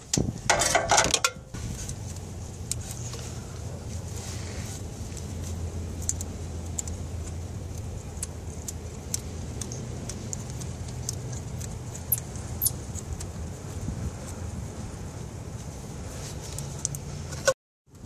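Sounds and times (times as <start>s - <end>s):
short high squeaks: 12.0s - 12.8s.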